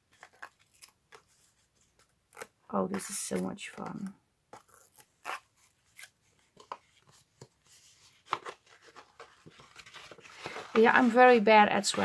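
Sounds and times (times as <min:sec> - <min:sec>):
paper rustling and crinkling: 0:05.9 - 0:12.0.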